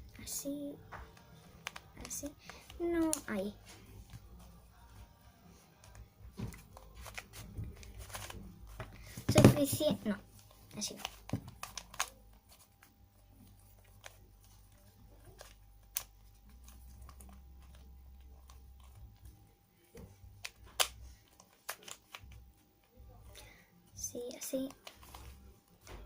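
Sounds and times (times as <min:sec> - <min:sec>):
puzzle cube clicks and snaps: 0:10.8 - 0:12.2, 0:20.4 - 0:22.4.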